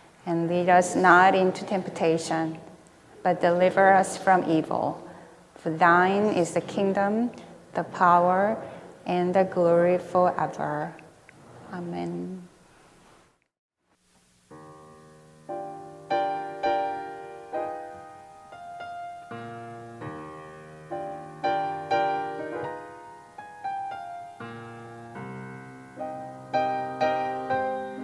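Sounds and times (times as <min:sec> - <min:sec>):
piano playing slow chords: 0:14.5 - 0:28.0.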